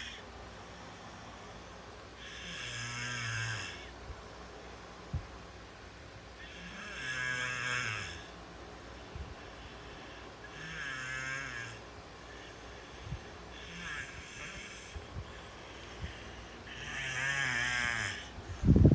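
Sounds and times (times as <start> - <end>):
snoring: 0.9 - 3.9, 6.4 - 8.3, 9.6 - 18.6.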